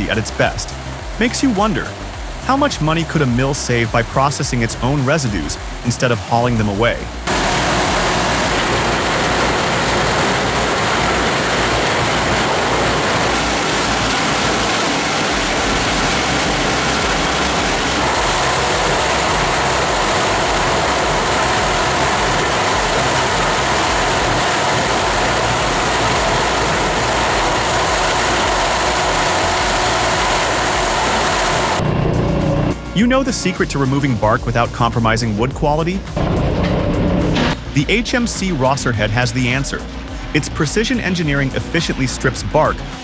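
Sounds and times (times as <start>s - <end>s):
wood chipper running: 7.0s - 33.0s.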